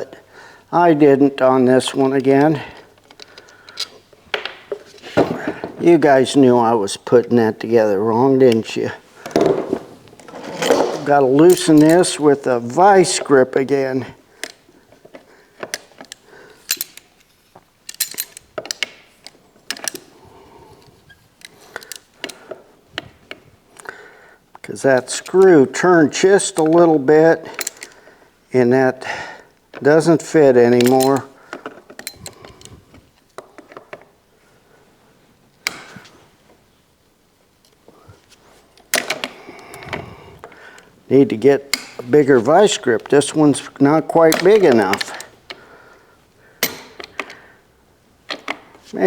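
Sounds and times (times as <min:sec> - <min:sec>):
light clicks of metal parts: 0:01.4 - 0:05.0, 0:10.7 - 0:28.1, 0:29.7 - 0:34.1, 0:37.6 - 0:47.6
metal parts clinking: 0:08.5 - 0:13.4, 0:14.4 - 0:20.1, 0:27.4 - 0:28.0, 0:30.0 - 0:32.8, 0:41.6 - 0:45.6.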